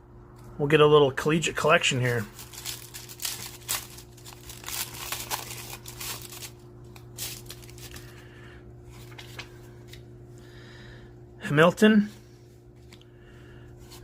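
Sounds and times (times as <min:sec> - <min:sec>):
steady low hum: 0:00.0 - 0:14.0
cards rustling: 0:01.6 - 0:08.2, 0:08.9 - 0:10.1
wrapper tearing and crinkling: 0:02.0 - 0:08.1.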